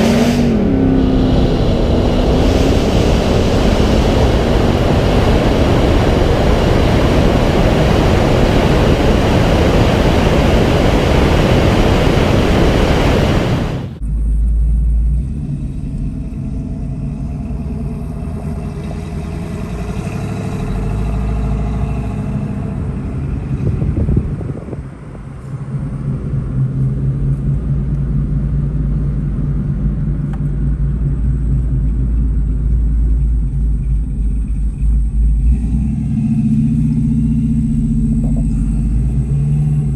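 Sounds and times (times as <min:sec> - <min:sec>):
loud rushing noise: 0:00.0 - 0:14.0
car engines humming: 0:00.0 - 0:39.9.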